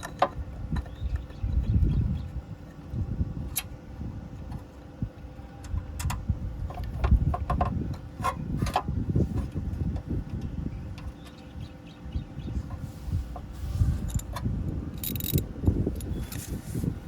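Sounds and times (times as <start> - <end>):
low rumble of handling noise: 0.0 - 17.0
short metallic clinks: 14.9 - 15.4.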